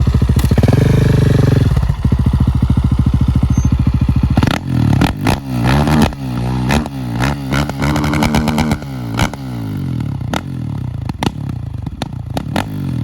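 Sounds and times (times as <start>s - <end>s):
motorcycle engine idling: 0.0s - 13.0s
engine revving sharply: 4.4s - 9.8s
exhaust pops and crackles: 10.3s - 12.8s.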